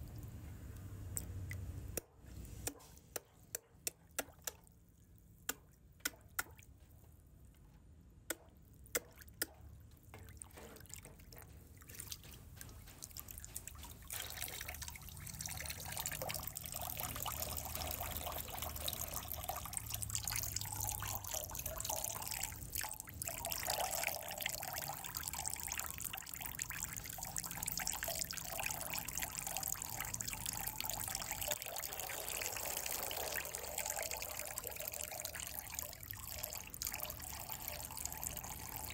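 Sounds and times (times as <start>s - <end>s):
water trickling: 9.8s - 38.9s.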